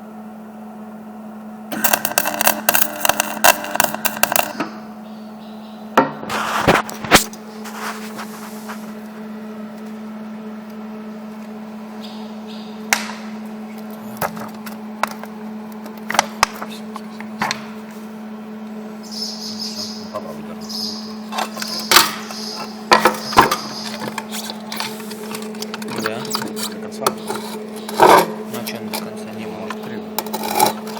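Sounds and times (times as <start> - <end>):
steady low hum: 0.0 - 30.9
ratchet: 1.7 - 4.6.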